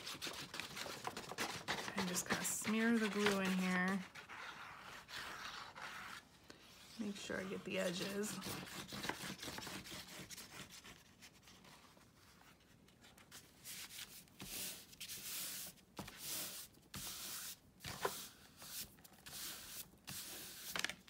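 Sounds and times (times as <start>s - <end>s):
glue rubbed over paper: 0.0s - 6.2s.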